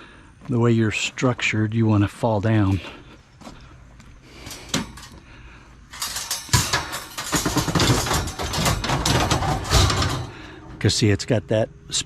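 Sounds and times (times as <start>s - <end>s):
scrap metal clattering: 4.3s - 11.1s.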